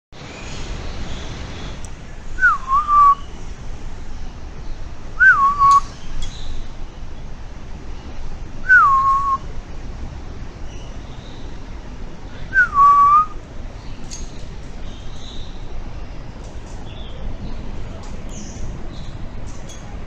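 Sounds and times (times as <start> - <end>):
bird whistled call: 2.4 - 3.3, 5.2 - 6.5, 8.7 - 9.5, 12.5 - 13.4.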